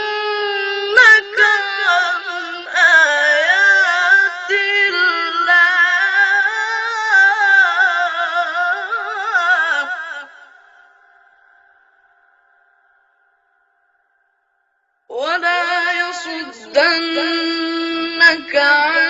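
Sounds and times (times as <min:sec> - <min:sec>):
person reciting in melodic voice: 0:00.0 - 0:10.5, 0:15.1 - 0:19.0.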